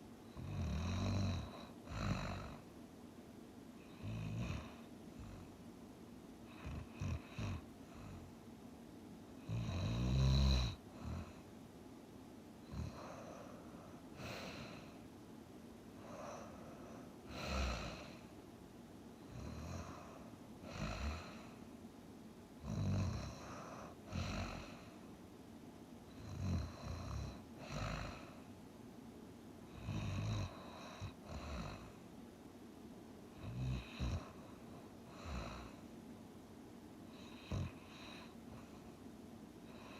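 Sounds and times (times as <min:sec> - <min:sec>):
person snoring: 0:16.0 - 0:18.3, 0:19.3 - 0:21.6, 0:22.6 - 0:25.0, 0:26.2 - 0:28.4, 0:37.1 - 0:38.8.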